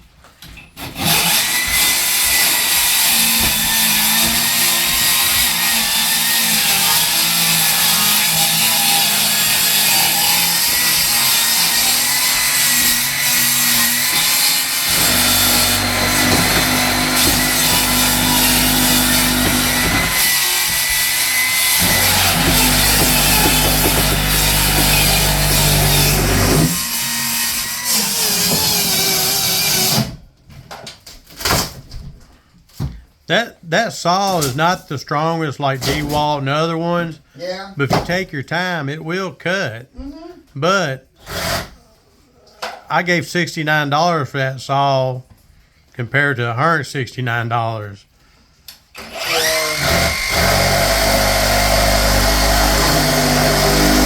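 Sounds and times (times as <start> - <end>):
circular saw cutting fiberglass: 0.9 - 30.0, 49.0 - 54.0.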